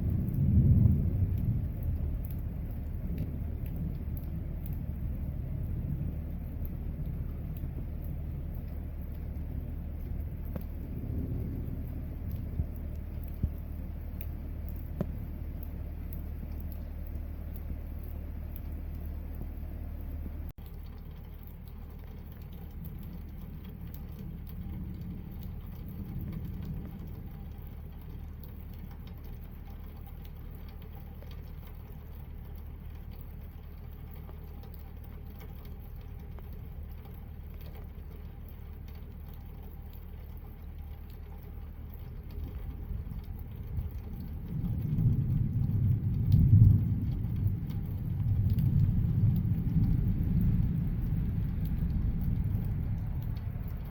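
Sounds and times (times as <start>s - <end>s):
distant thunder rumbling: 0.0s - 20.5s, 22.6s - 29.1s, 42.2s - 53.9s
light rain pattering: 0.0s - 53.9s.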